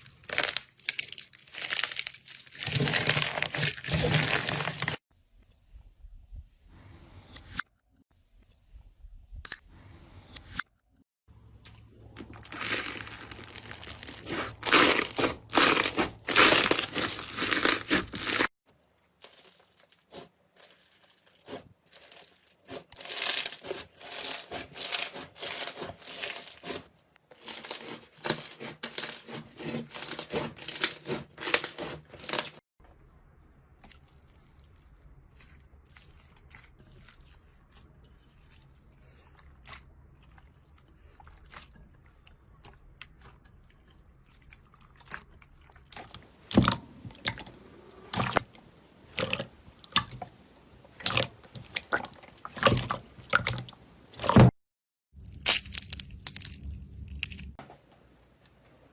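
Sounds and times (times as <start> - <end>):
slime crackling and popping: 0.2 - 5.0, 12.2 - 18.5, 55.2 - 57.6.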